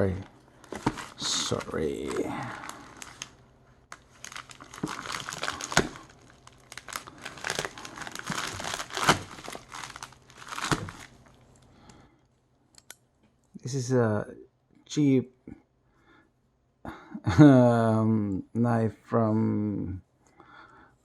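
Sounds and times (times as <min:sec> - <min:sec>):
packaging crinkling and tearing: 0:00.0 - 0:11.4.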